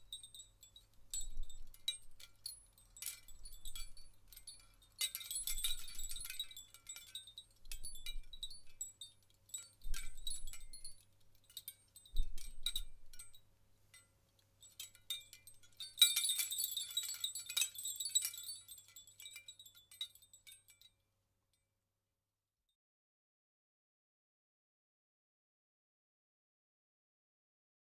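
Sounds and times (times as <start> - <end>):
copper bells jingling: 0.0 - 13.4, 14.6 - 20.9.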